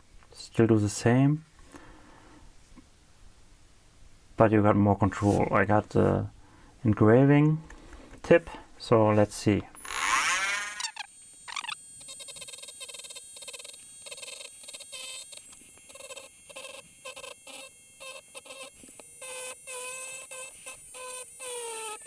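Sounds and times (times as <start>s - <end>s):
rotary tool whining: 9.8s - 22.0s.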